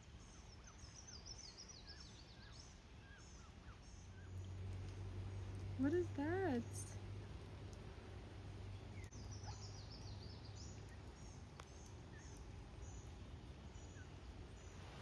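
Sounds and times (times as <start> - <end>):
faint outdoor background noise: 0.0 - 15.0
small bird chirping: 8.7 - 13.1.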